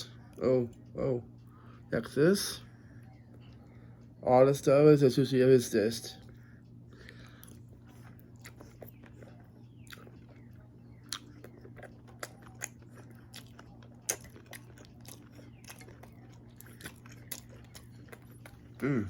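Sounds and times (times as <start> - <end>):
person chewing with wet mouth clicks: 11.0 - 19.0.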